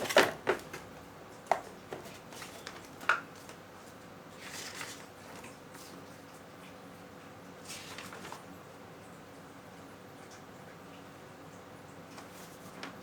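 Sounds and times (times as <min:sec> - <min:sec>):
packaging rustle: 0:00.0 - 0:03.6, 0:07.7 - 0:08.5.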